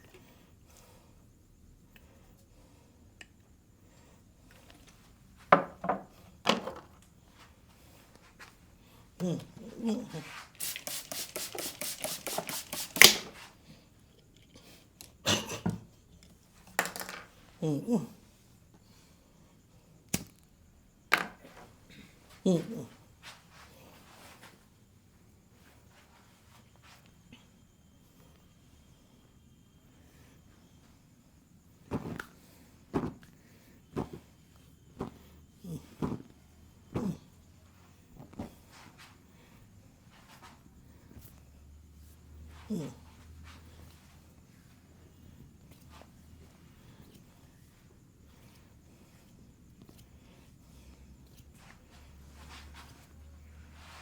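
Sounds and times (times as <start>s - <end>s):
hands slapping in massage: 10.6s - 13.5s.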